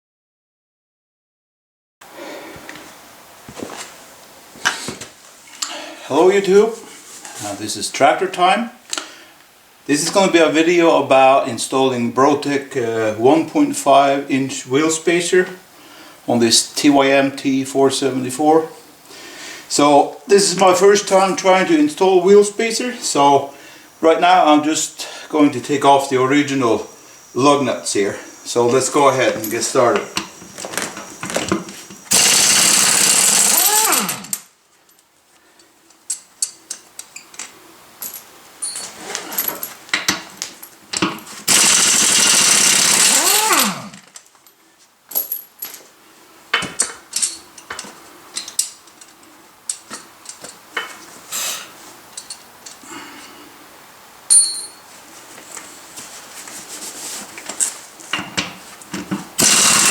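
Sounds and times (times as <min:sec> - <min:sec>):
impact wrench hammering: 0:32.1 - 0:34.4, 0:41.5 - 0:44.0, 0:59.4 - 0:59.9.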